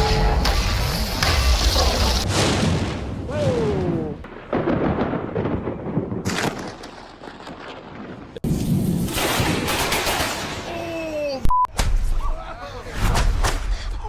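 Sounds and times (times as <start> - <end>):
thunder cracks and rumble: 0.3 - 6.8.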